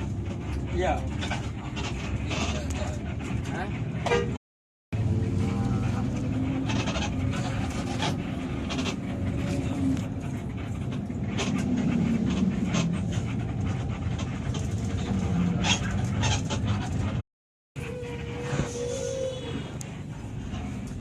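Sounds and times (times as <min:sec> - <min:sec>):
bus engine rumbling: 0:00.0 - 0:17.2, 0:17.8 - 0:21.0.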